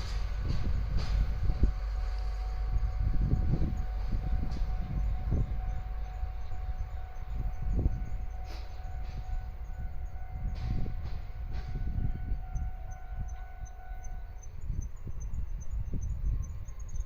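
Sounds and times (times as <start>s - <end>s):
wheels clacking over rail joints: 0.0s - 12.8s
locomotive rumbling past: 0.0s - 17.0s.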